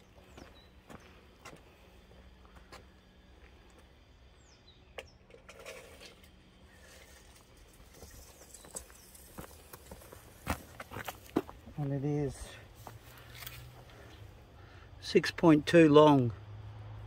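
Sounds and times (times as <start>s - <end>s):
quiet footsteps on ground: 0.0s - 4.7s, 6.6s - 14.5s.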